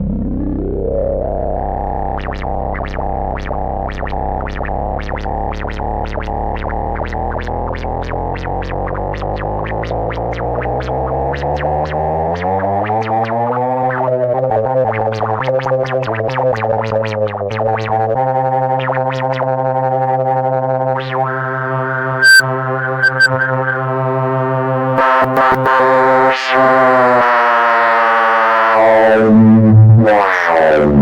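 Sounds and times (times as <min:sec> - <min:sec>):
buzzing distorted synth drone: 0:00.0 - 0:05.5
rapid sharp electronic blips: 0:22.2 - 0:22.4, 0:23.0 - 0:23.4.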